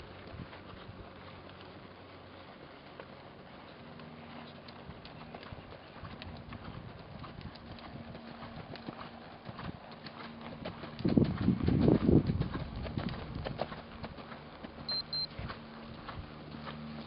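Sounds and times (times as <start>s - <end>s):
horse hooves clip-clopping: 0.0s - 17.0s.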